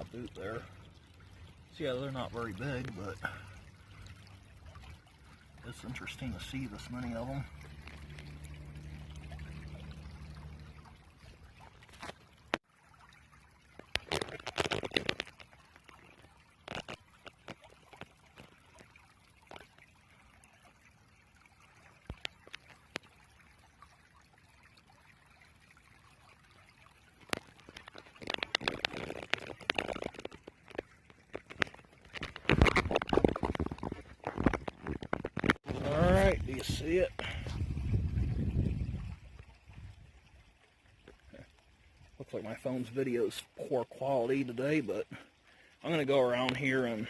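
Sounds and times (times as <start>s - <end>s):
low steady hum: 0.0s - 12.0s
faint water trickle: 0.0s - 47.0s
water sloshing and splashing: 0.0s - 47.0s.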